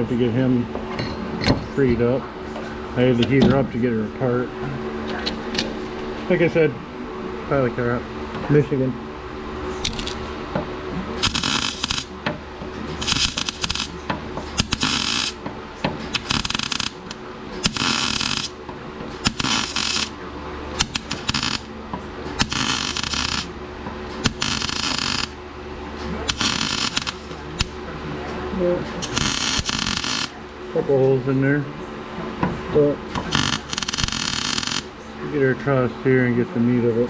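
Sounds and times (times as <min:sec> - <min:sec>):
low electrical hum: 0:00.0 - 0:37.0
welder crackling: 0:09.8 - 0:10.4, 0:11.2 - 0:12.2, 0:12.9 - 0:25.4, 0:26.0 - 0:27.9, 0:29.0 - 0:30.4, 0:33.1 - 0:34.9.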